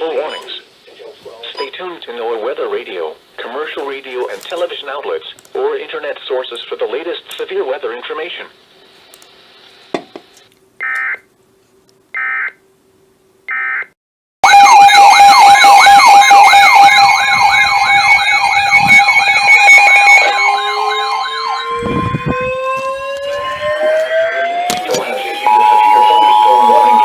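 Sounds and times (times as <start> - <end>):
siren winding up: 13.5 - 27.0
warbling electronic sirens: 13.5 - 27.0
digital data bursts: 16.0 - 22.1, 24.9 - 27.0.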